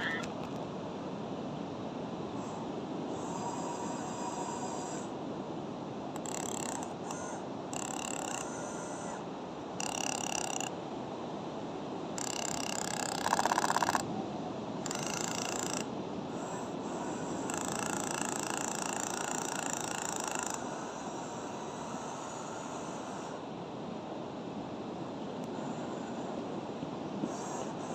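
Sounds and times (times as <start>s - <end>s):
rapid mechanical rattle: 6.2s - 8.8s, 9.8s - 10.7s, 12.2s - 14.1s, 14.9s - 20.7s.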